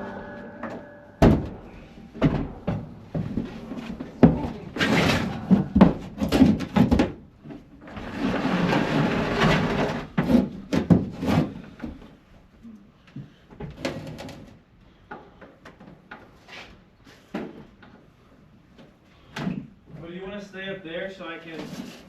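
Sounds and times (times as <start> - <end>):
plywood scraping and sliding: 7.9 - 10.5.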